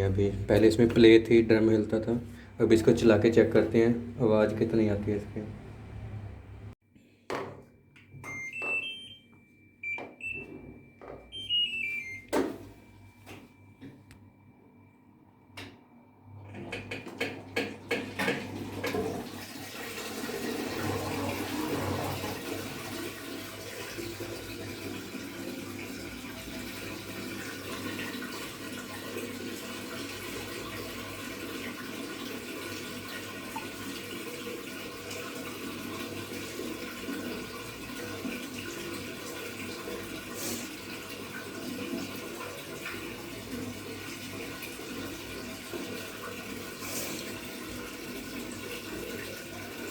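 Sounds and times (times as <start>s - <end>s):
washing machine clicks: 16.5s - 19.1s
water pouring into tub: 18.4s - 49.9s.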